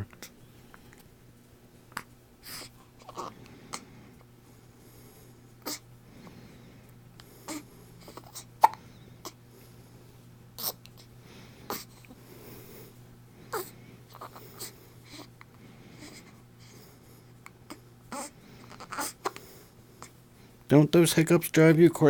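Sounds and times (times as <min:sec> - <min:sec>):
pet hiccuping: 0:08.2 - 0:09.4.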